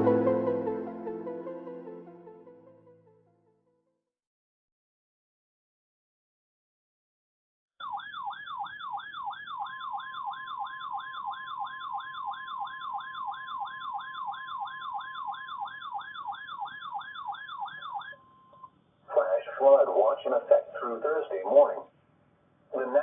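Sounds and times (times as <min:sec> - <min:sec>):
steady alert tone: 0:00.0 - 0:02.3
warbling electronic siren: 0:07.8 - 0:18.3.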